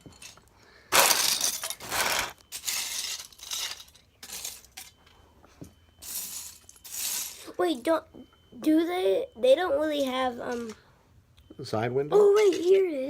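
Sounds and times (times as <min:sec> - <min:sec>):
plastic bricks clattering: 0:00.0 - 0:04.9.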